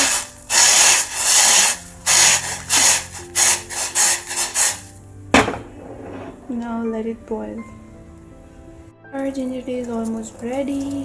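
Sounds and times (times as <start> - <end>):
sharp knock: 5.4 - 6.4.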